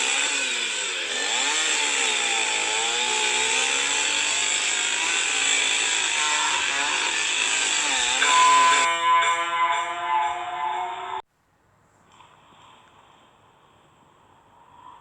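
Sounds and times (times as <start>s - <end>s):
chainsaw engine revving: 0.0s - 10.1s.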